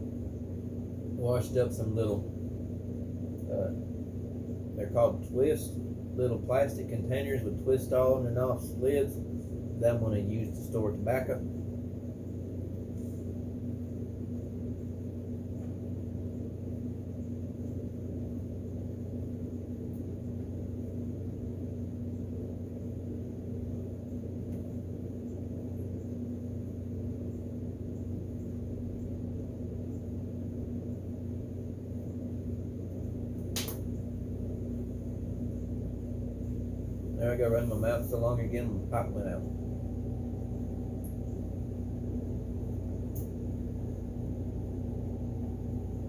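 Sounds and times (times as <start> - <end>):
steady low hum: 0.0 - 46.0
sharp click: 33.5 - 33.9.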